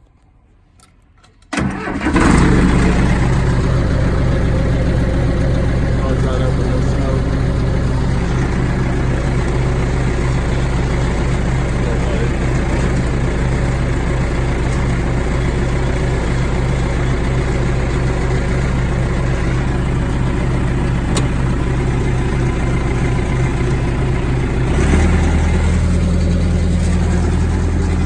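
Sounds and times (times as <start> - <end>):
dozer diesel engine running: 1.5 - 28.0.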